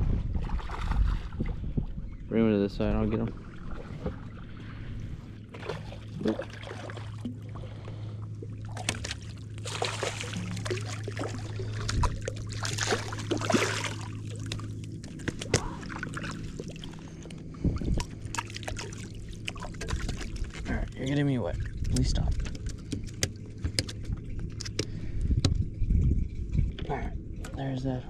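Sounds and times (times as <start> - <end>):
steady low hum: 0.0 - 28.0
water splashing from thrashing fish: 5.5 - 24.2.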